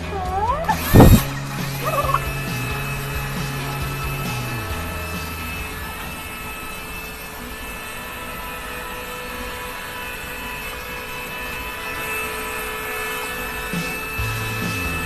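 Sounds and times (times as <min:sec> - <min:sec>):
dryer blowing air: 0:00.0 - 0:15.0.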